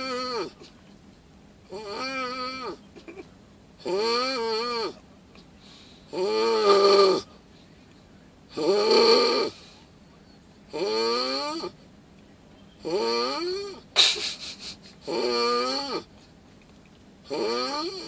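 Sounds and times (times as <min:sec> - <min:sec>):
person snoring: 0:06.1 - 0:07.2, 0:08.6 - 0:09.6, 0:12.9 - 0:13.8, 0:15.0 - 0:16.0, 0:17.3 - 0:18.0.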